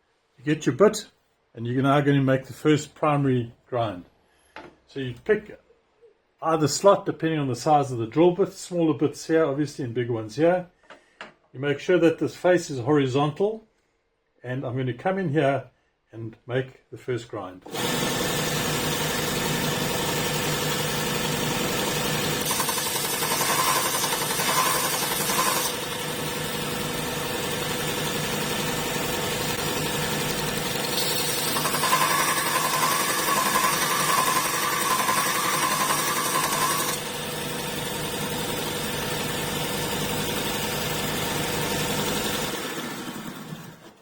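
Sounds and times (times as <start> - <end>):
drill bit grinding on belt: 17.7 - 38.9
belt sharpener running: 17.7 - 44.0.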